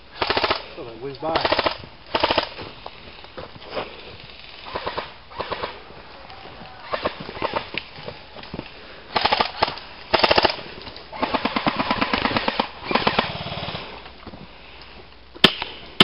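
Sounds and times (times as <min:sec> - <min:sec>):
airsoft guns full-auto bursts: 0:00.1 - 0:00.7, 0:01.3 - 0:02.6, 0:04.6 - 0:05.8, 0:09.1 - 0:13.9.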